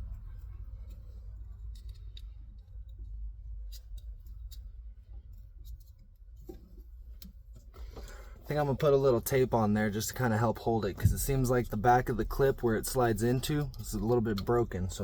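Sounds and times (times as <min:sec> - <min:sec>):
steady low rumble: 0:00.0 - 0:15.0
plastic parts clicking and scraping: 0:00.7 - 0:08.4.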